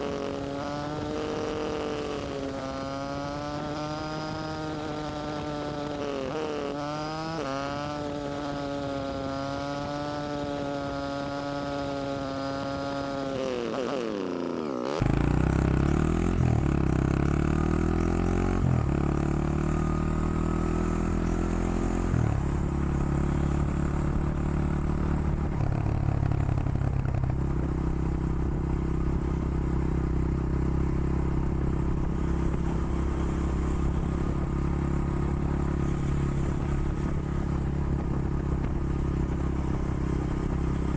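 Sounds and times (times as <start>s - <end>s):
motorcycle accelerating through gears: 0.0s - 40.9s
motorcycle engine running: 0.0s - 40.9s.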